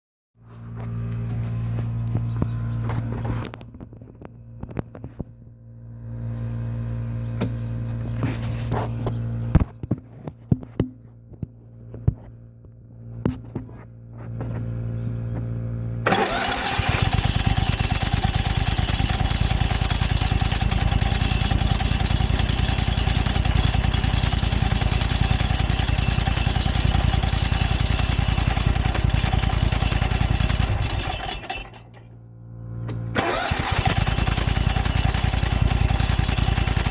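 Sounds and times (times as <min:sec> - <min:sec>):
mower engine running: 0:14.4 - 0:36.9
harsh clutch noise: 0:16.0 - 0:32.1, 0:32.9 - 0:36.9.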